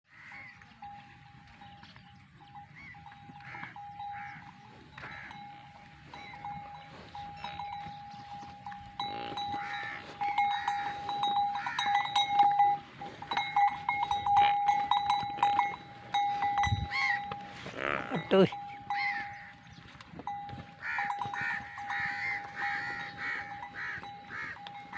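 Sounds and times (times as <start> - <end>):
livestock bells jangling: 0.2 - 24.9
goats or sheep bleating: 8.9 - 11.9, 16.8 - 19.5, 20.8 - 24.9.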